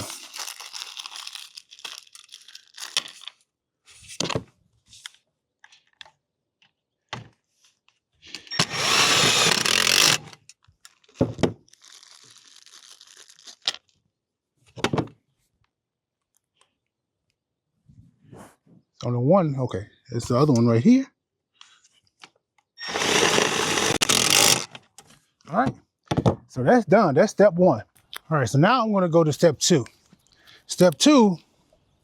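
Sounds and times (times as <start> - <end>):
impact driver driving screw: 8.5 - 10.4, 22.8 - 24.7.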